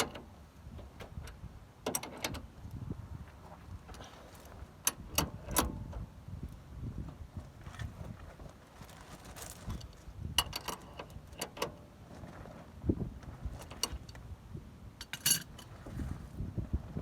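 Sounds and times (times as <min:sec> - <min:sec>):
metallic tool clinks: 0:15.0 - 0:15.5.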